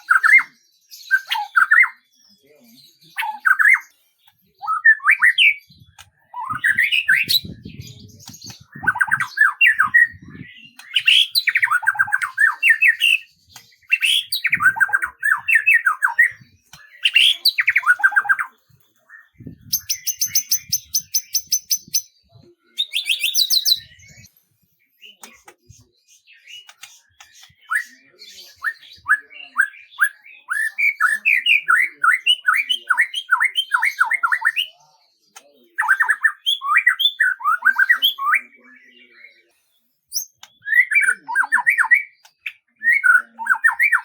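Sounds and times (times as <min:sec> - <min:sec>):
songbird singing: 0:00.0 - 0:44.0
high bird trills: 0:19.4 - 0:22.1.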